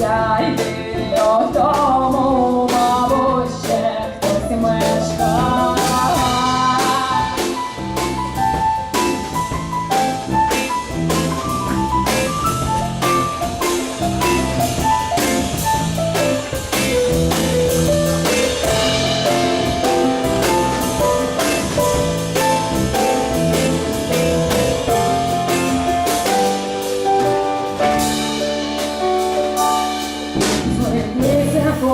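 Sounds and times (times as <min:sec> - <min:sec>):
drum kit beat: 0:00.0 - 0:31.9
live band instrumental: 0:00.0 - 0:31.9.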